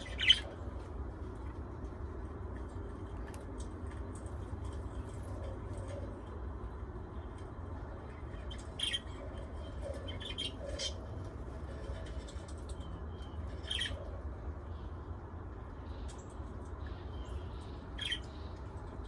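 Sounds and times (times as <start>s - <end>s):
birds chirping and squawking: 0.0s - 0.8s, 8.0s - 14.8s, 16.8s - 18.6s.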